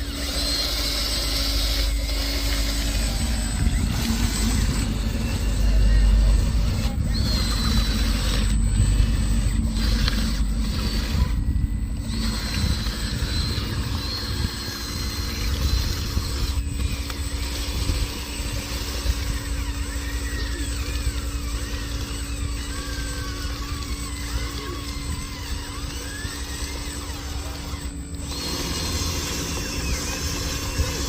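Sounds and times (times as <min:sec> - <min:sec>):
electric motors whining: 0:00.0 - 0:31.0
low rumble: 0:02.0 - 0:18.0.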